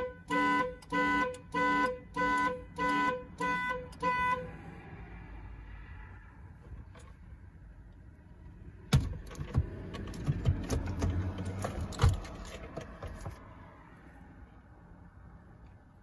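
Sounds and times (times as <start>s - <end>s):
knocks and rattles: 8.9s - 13.4s.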